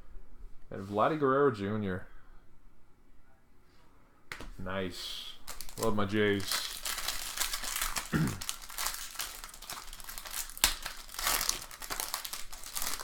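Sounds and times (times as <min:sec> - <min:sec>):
packaging crinkling: 0:05.4 - 0:13.0.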